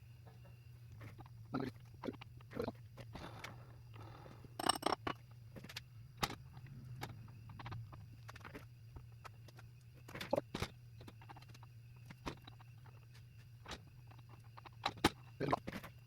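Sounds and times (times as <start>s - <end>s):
steady low hum: 0.0s - 16.0s
metal parts clicking and knocking: 4.6s - 6.4s.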